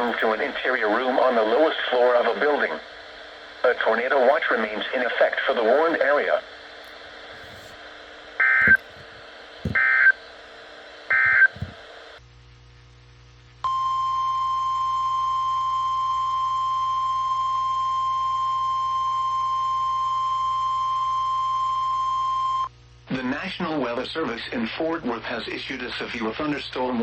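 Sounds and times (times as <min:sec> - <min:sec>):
steady alarm tone: 0:09.7 - 0:10.2, 0:11.1 - 0:11.8.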